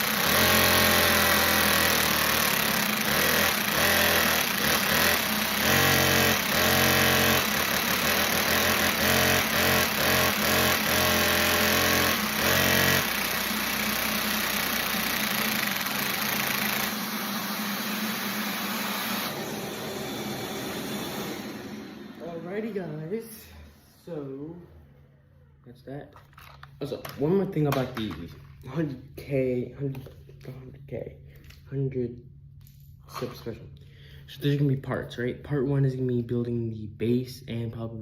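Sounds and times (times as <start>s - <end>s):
engine revving: 0.0s - 23.1s.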